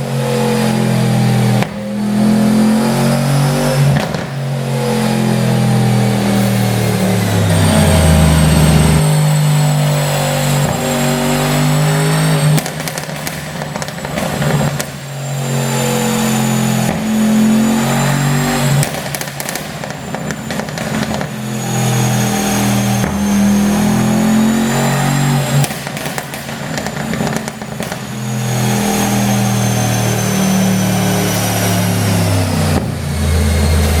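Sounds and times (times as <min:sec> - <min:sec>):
car engine revving: 0:00.0 - 0:34.0
exhaust pops and crackles: 0:01.6 - 0:01.8, 0:03.8 - 0:04.6, 0:12.4 - 0:15.2, 0:16.8 - 0:17.2, 0:18.7 - 0:21.5, 0:25.6 - 0:28.5.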